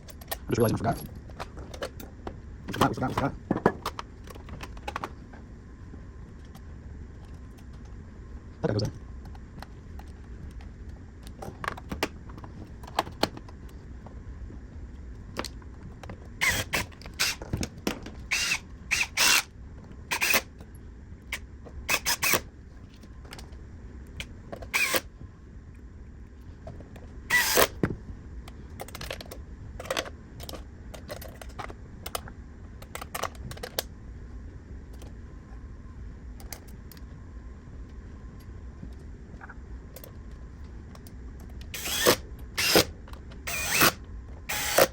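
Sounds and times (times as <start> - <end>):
steady low hum: 0.0 - 44.9
small parts clicking and knocking: 28.7 - 33.9.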